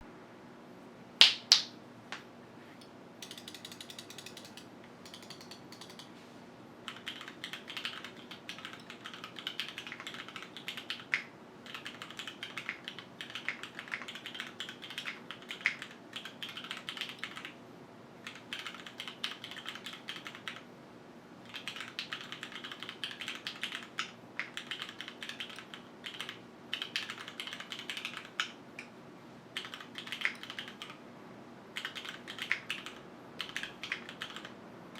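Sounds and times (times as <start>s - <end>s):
mechanical keyboard typing: 3.2s - 6.1s, 6.9s - 17.6s, 18.2s - 20.7s, 21.5s - 28.6s, 29.6s - 31.0s, 31.8s - 34.6s.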